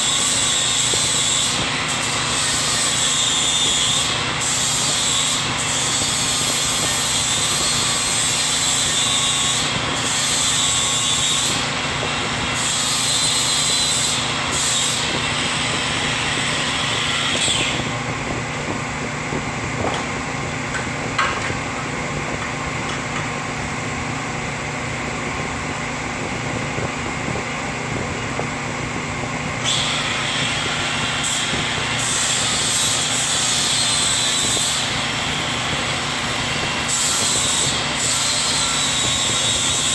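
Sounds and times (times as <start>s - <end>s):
angle grinder grinding metal: 0.0s - 18.0s.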